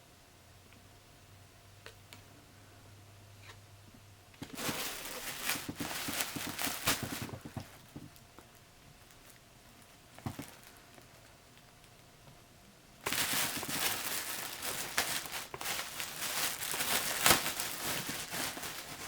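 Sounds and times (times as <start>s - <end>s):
packaging rustling and crinkling: 4.4s - 12.0s, 13.0s - 19.0s.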